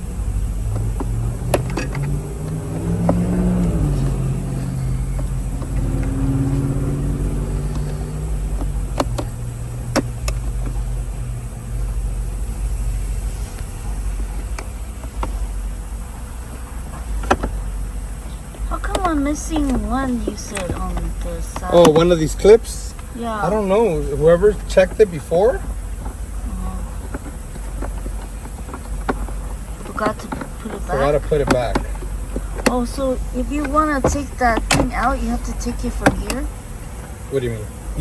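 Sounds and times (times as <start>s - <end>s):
low engine rumble: 0.0s - 38.0s
sharp clicks and clanks: 18.3s - 22.2s, 27.0s - 37.1s.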